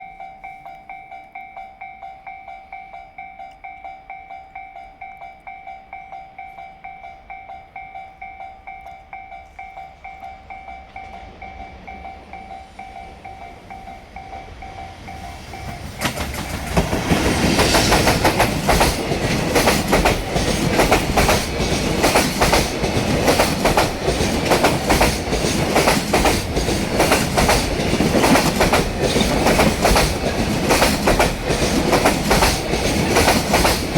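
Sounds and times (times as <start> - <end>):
train rumbling: 6.8 - 33.9
train wheels clattering on rails: 9.0 - 33.9.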